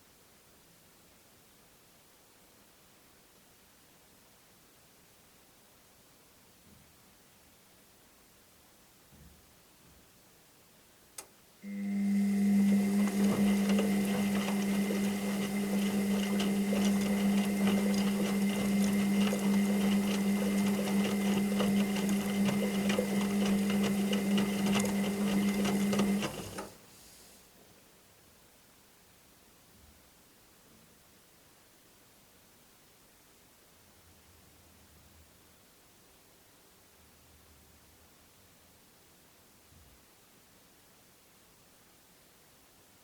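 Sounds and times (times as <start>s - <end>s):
washing machine motor humming: 11.6s - 26.8s
washing machine motor click: 11.7s - 26.8s.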